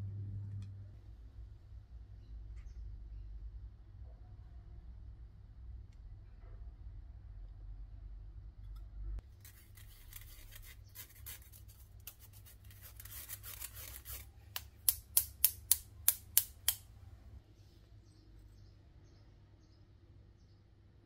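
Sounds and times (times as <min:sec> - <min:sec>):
rustling and scraping handling: 0:09.2 - 0:14.8
sharp snips or clicks: 0:13.5 - 0:16.9.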